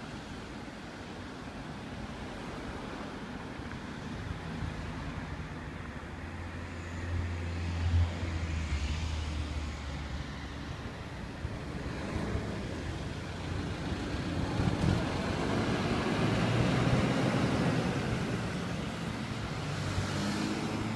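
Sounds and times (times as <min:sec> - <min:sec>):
vehicle engine hum and tyre noise: 0:00.0 - 0:20.9.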